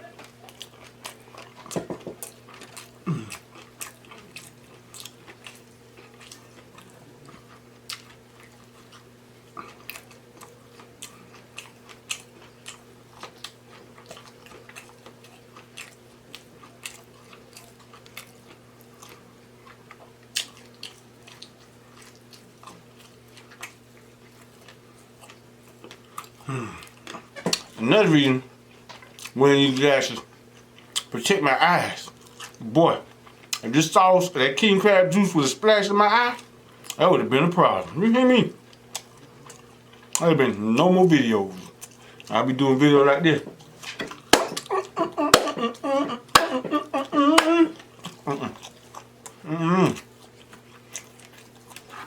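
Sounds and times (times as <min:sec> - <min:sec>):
wet chewing and lip-smacking: 0:00.0 - 0:27.8, 0:28.6 - 0:31.2, 0:32.0 - 0:33.7, 0:37.8 - 0:40.3, 0:41.5 - 0:42.3, 0:43.6 - 0:52.0
low electrical hum: 0:00.0 - 0:52.0.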